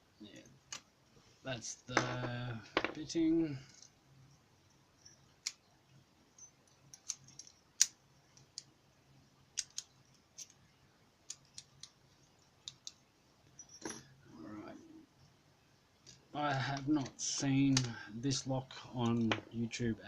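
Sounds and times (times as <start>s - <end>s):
metallic clicks of padlock handled: 6.7s - 8.7s.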